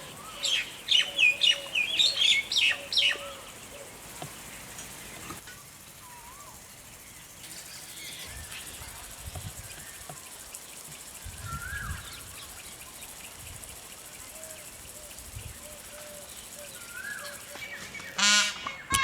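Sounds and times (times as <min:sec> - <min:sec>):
warbling bird calls: 0:00.0 - 0:06.8
steady high hiss: 0:00.0 - 0:19.0.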